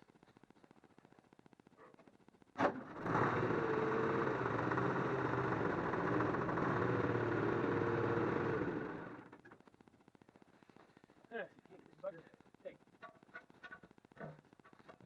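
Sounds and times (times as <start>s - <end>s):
motor running and winding down: 2.9s - 9.4s.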